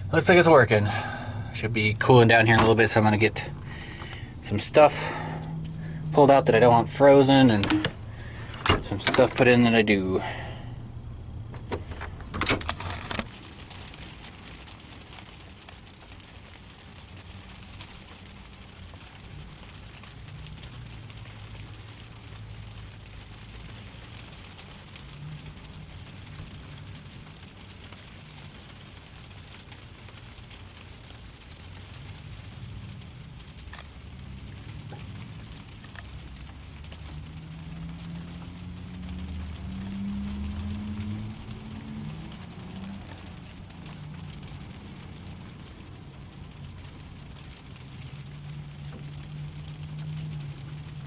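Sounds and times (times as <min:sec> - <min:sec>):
steady low hiss: 0:00.0 - 0:51.0.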